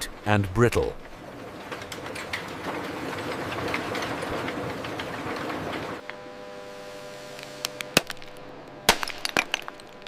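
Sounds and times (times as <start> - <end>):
steady machine hum: 0.0 - 10.0
industrial machinery clattering: 0.9 - 6.1.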